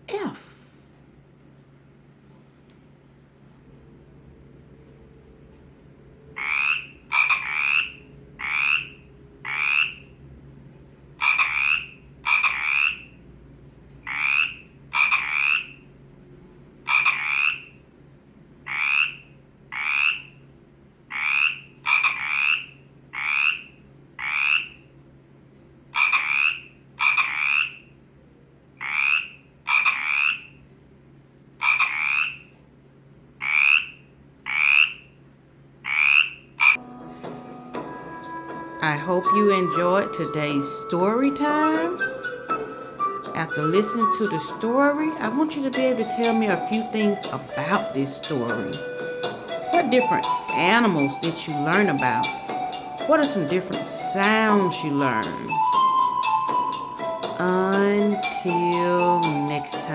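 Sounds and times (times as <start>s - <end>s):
frog croaking: 6.3s - 10.2s, 11.2s - 13.2s, 14.0s - 16.0s, 16.8s - 17.8s, 18.6s - 20.5s, 21.1s - 24.9s, 25.9s - 28.0s, 28.8s - 30.6s, 31.6s - 32.5s, 33.4s - 35.2s, 35.8s - 36.8s.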